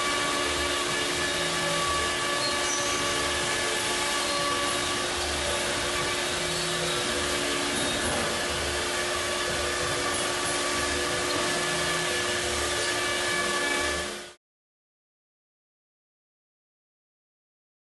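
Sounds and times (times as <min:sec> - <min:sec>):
cutting noise: 0:00.0 - 0:14.3
router spindle whine: 0:00.0 - 0:14.4.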